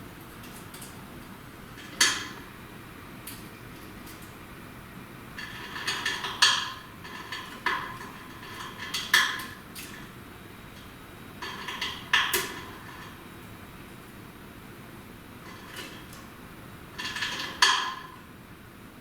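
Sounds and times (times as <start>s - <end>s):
cage toys clinking and clattering: 17.0s - 18.1s.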